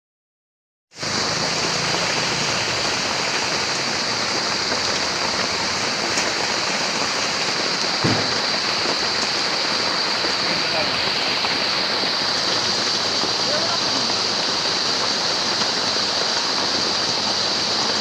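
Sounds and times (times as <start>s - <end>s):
steady rain falling: 1.0s - 18.0s
low thump: 8.0s - 8.5s.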